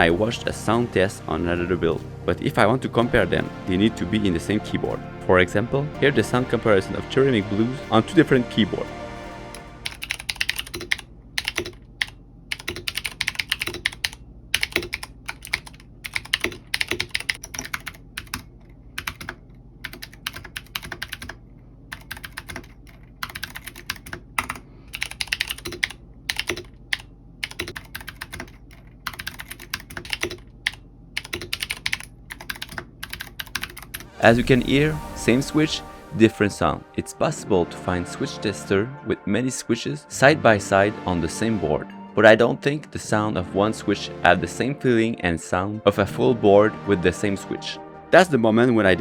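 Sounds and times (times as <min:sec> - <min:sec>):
clicky mechanical keyboard typing: 0:09.9 - 0:34.1.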